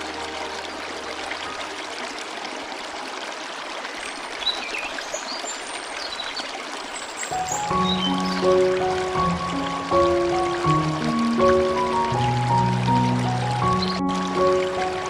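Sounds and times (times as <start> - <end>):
soft music: 0.0 - 3.4, 7.2 - 15.0
stream water rushing: 0.0 - 15.0.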